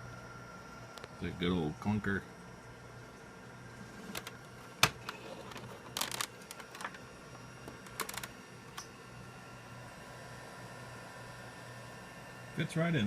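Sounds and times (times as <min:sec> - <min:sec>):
hard drive clicks and knocks: 0:07.6 - 0:08.8.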